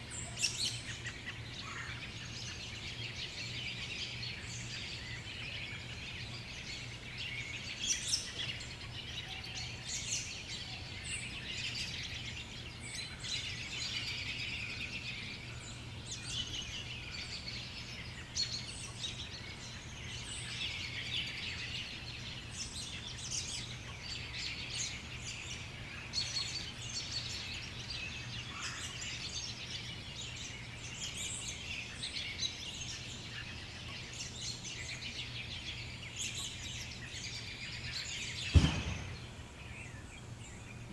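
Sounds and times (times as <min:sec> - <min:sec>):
birds chirping: 0:00.0 - 0:40.9.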